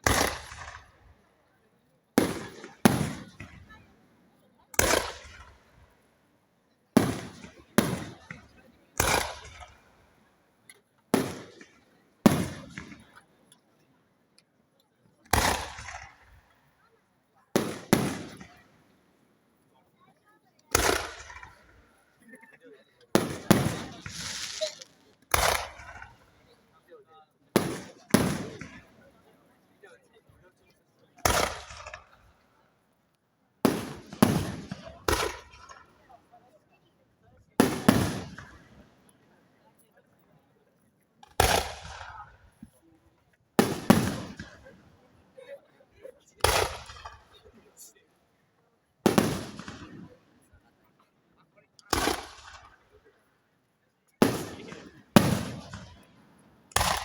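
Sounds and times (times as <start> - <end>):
fireworks crackles: 0.0 - 1.0, 23.2 - 26.3, 41.2 - 42.6, 43.6 - 44.7, 49.1 - 50.0, 51.8 - 52.8, 54.2 - 56.0
fireworks shells bursting: 23.2 - 26.2.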